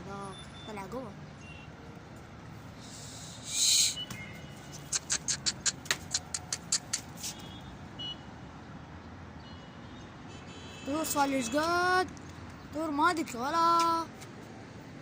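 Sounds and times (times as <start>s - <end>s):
distant traffic hum: 0.0s - 15.0s
sharp clicks: 4.8s - 7.2s.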